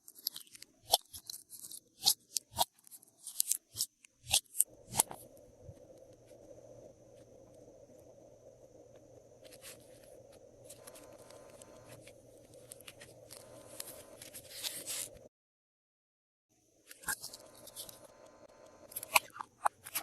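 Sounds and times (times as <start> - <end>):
faint steady hum: 4.6 - 15.3, 16.6 - 20.0.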